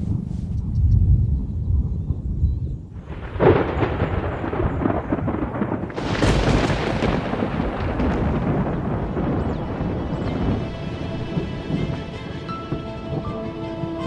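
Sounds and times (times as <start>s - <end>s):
rolling thunder: 0.8s - 14.0s
thunder clap: 1.0s - 14.0s
rain hissing: 3.0s - 14.0s.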